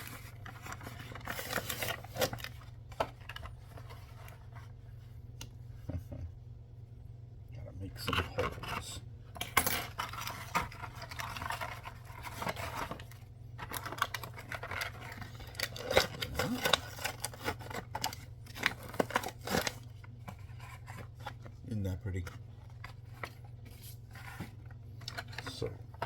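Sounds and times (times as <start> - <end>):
cardboard box being torn: 13.8 - 19.8.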